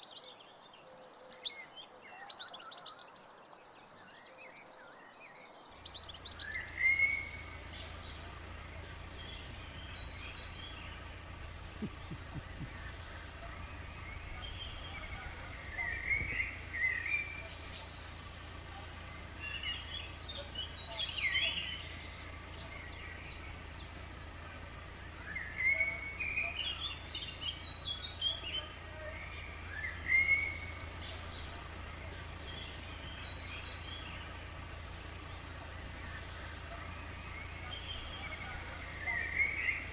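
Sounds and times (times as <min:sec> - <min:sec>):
songbirds twittering: 0:00.0 - 0:39.9
low rumble: 0:06.0 - 0:25.4.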